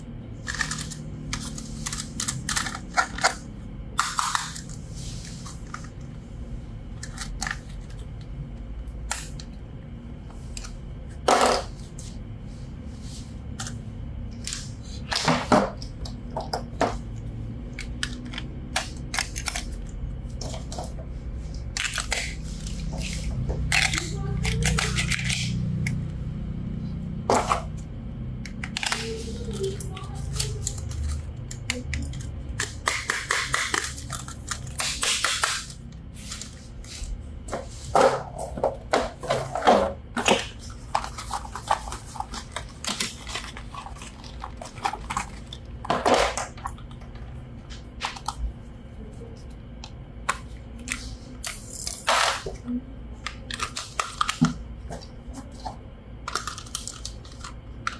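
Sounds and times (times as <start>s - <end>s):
toy packaging clicks and crinkles: 0.4s - 3.4s, 4.0s - 4.8s, 7.0s - 8.2s, 17.7s - 20.8s, 21.6s - 26.0s, 28.5s - 36.6s, 40.2s - 47.3s, 53.3s - 54.6s, 56.2s - 57.9s
low hum: 15.8s - 32.9s.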